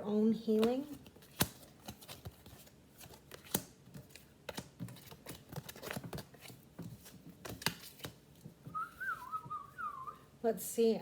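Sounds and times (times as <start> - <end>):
cards tapping and clicking on table: 0.5 - 8.5.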